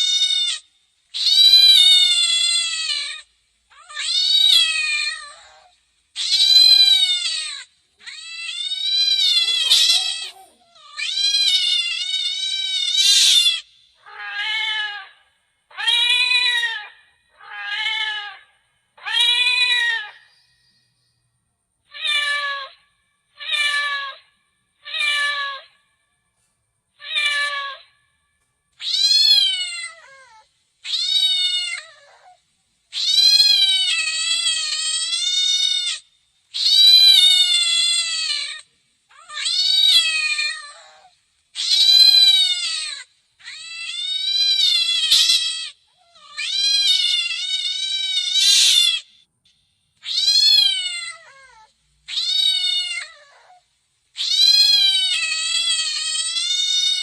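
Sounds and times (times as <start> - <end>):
cat meowing: 1.2 - 15.1, 15.7 - 18.4, 19.0 - 20.2, 24.8 - 25.6, 27.0 - 27.8, 28.8 - 36.0, 36.6 - 49.1, 50.0 - 53.6, 54.2 - 57.0.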